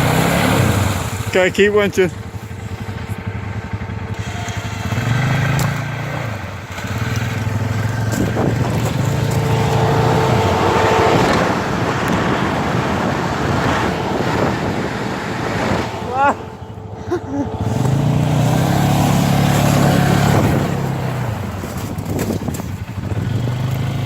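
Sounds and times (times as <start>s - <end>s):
atv engine revving: 0.0s - 24.0s
rushing churning noise: 7.3s - 22.2s.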